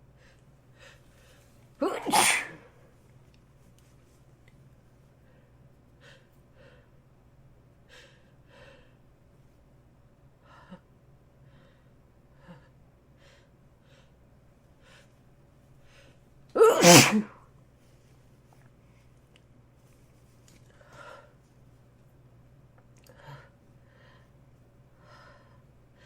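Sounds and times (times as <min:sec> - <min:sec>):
loud sneeze: 0:01.8 - 0:02.7, 0:16.6 - 0:17.4.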